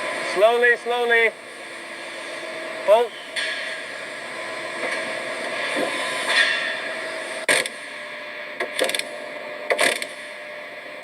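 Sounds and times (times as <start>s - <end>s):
industrial machinery noise: 0.0s - 11.0s.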